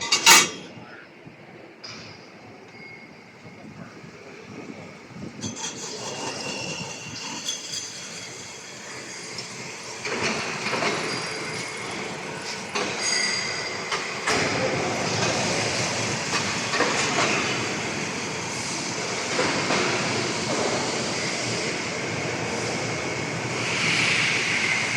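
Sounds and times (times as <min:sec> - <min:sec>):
lathe running and cutting metal: 0:04.9 - 0:24.9
brief high squeal: 0:13.0 - 0:13.8.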